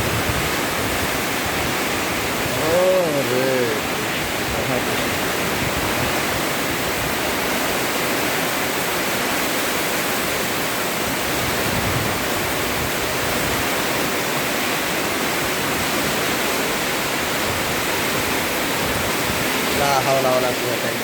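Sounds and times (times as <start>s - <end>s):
torrential rain: 0.0s - 21.0s.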